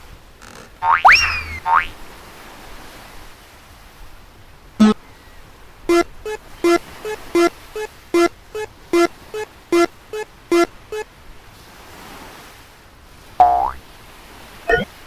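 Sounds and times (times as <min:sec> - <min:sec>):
two-tone electronic crossing bell: 0:05.9 - 0:11.0.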